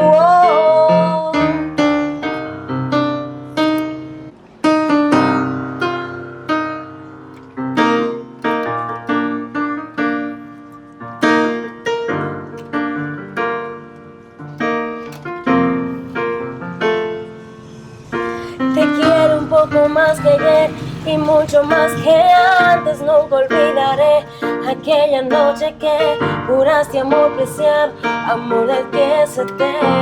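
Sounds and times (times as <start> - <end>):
piano ballad: 0.0 - 30.0.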